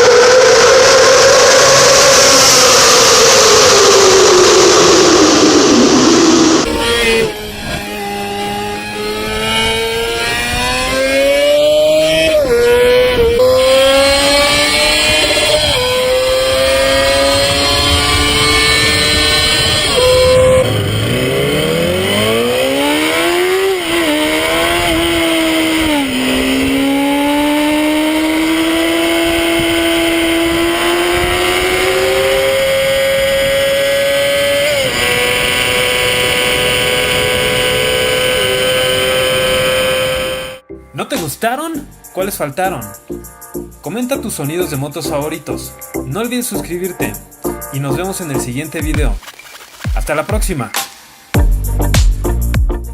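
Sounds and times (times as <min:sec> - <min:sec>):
motorcycle engine revving high: 0:00.0 - 0:40.6.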